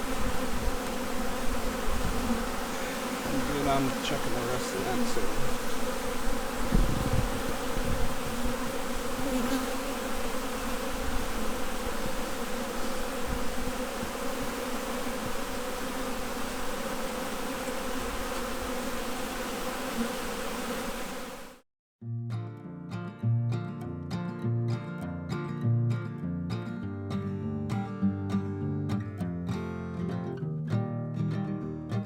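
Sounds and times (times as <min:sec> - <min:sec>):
bee colony humming: 0:00.0 - 0:21.6.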